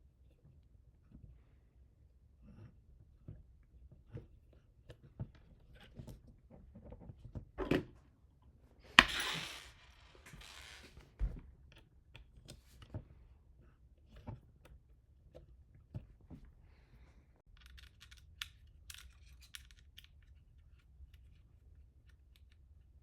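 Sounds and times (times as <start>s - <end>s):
small clicks and taps of parts: 17.4s - 23.0s.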